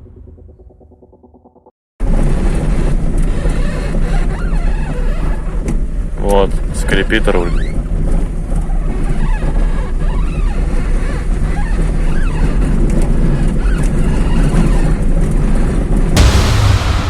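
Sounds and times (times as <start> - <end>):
music: 16.2 - 17.0.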